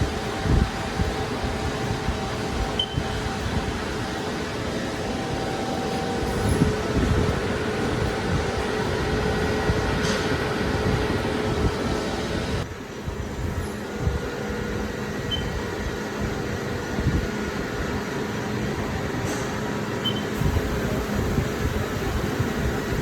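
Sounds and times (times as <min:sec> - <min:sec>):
lathe mechanical hum: 0:00.0 - 0:23.0
machine hiss: 0:20.2 - 0:23.0.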